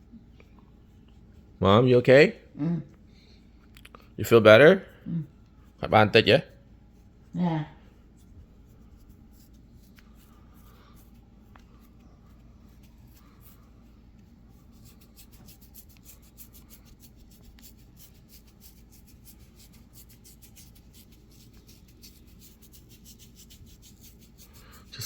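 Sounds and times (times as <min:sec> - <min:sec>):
fingers rubbing skin: 0:08.0 - 0:25.0.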